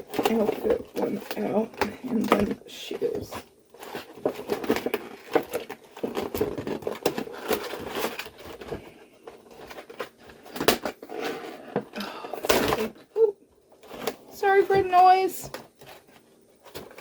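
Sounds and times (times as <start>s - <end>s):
packaging rustling and clicking: 0.0s - 13.1s, 13.7s - 17.0s.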